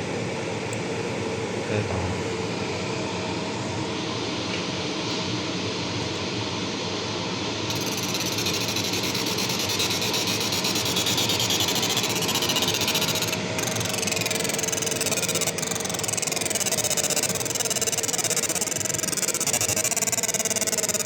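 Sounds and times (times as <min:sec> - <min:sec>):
fan and machine noise: 0:00.0 - 0:21.0
high pulsing laser buzz: 0:07.7 - 0:21.0.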